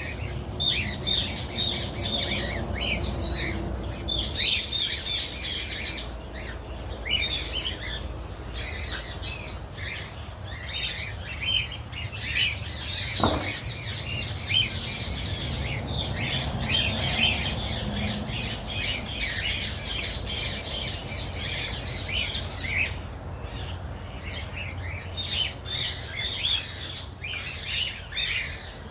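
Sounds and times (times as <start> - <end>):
birds chirping and squawking: 0.0 - 28.9
short knock: 13.2 - 13.7.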